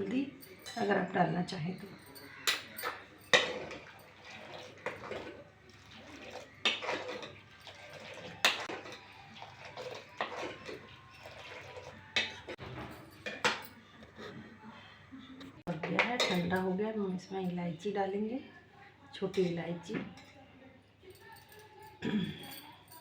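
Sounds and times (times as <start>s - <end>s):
spoon stirring milk: 1.8s - 14.4s
spoon clinking against pan: 2.0s - 4.4s, 13.0s - 13.8s, 15.9s - 16.6s
liquid sloshing: 2.0s - 13.7s.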